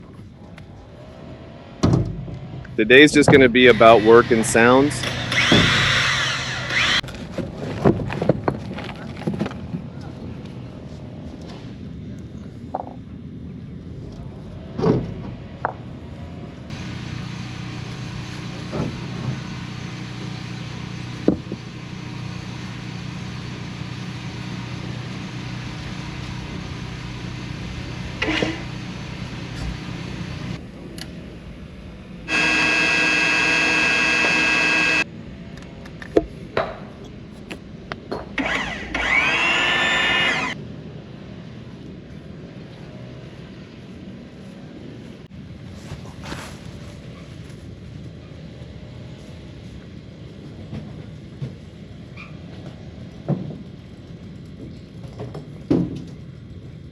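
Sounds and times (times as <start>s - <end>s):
steady mechanical hum: 0.0s - 56.9s
power tool whining: 3.5s - 7.0s, 28.2s - 28.8s, 32.3s - 35.1s, 38.4s - 40.6s.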